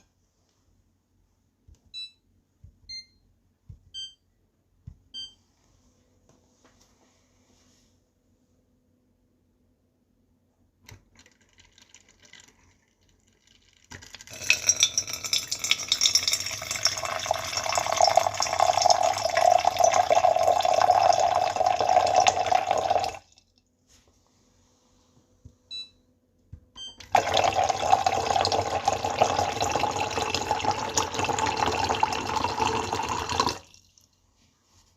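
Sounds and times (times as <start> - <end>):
water pouring into a vessel: 11.2 - 23.4, 27.1 - 34.1.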